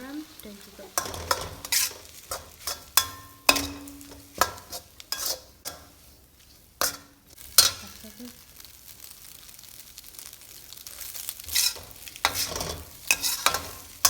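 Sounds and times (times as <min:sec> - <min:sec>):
faint sizzle: 0:00.0 - 0:14.0
metal spatula clanking on pan: 0:00.9 - 0:06.0, 0:06.8 - 0:08.0, 0:11.5 - 0:14.0.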